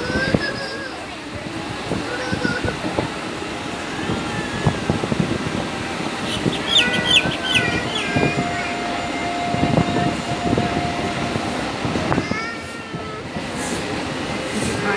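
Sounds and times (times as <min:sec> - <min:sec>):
train rumbling on rails: 0:00.0 - 0:14.9
short high squeals: 0:06.2 - 0:10.7.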